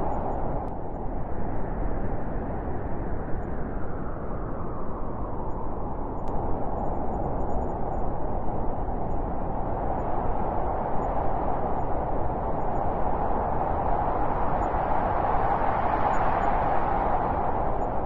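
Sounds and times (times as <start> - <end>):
wind blowing: 0.0 - 1.3.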